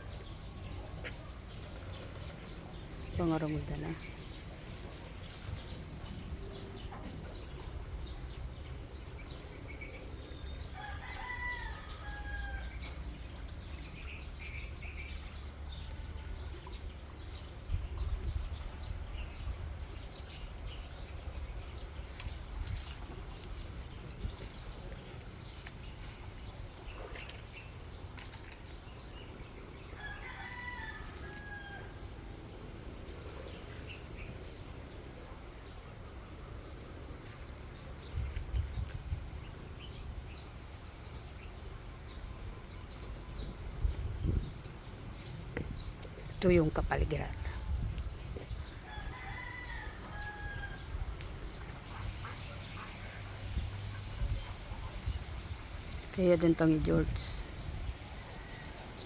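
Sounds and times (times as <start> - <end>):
rooster crowing: 10.8 - 12.8, 30.0 - 32.0, 48.8 - 50.9.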